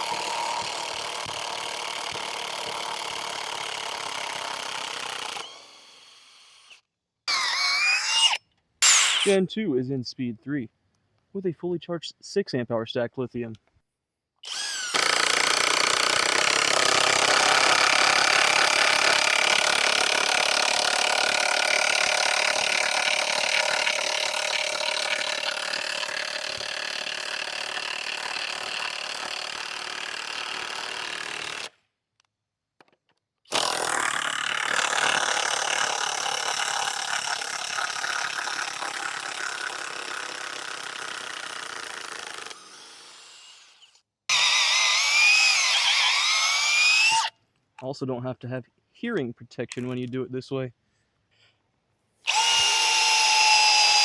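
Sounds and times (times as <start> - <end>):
impact wrench driving screw into wood: 0.0 - 5.6, 7.3 - 9.4, 14.4 - 31.8, 32.8 - 43.7, 44.3 - 47.3, 52.3 - 54.0.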